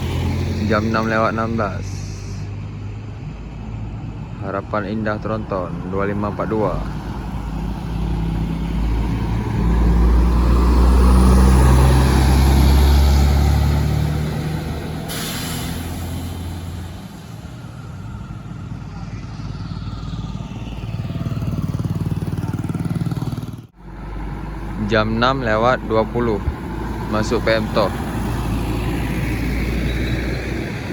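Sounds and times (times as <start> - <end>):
diesel truck passing: 0.0 - 30.9
sharp air hiss: 15.0 - 17.1.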